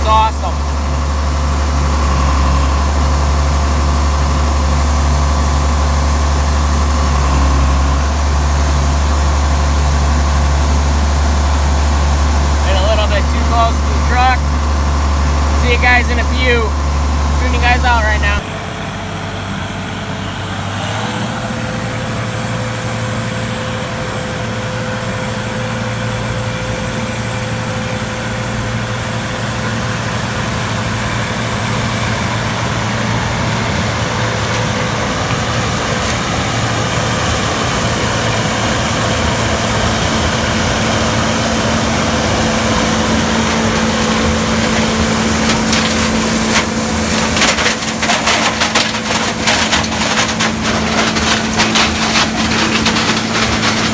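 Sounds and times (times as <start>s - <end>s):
crackling crunching sound: 0.0s - 18.4s, 40.2s - 53.9s
combine harvester humming: 0.0s - 53.9s.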